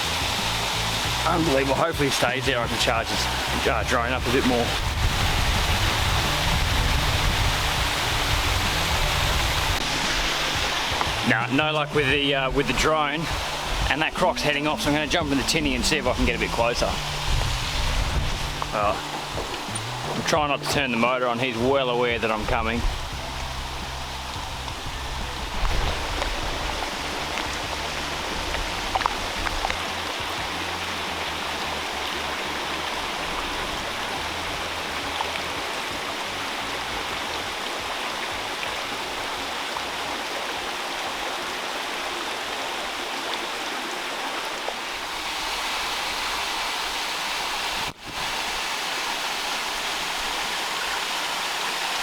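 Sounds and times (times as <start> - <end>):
waterfall splashing: 0.0 - 52.0
low knocks and rumbles: 16.2 - 20.9, 22.1 - 36.1.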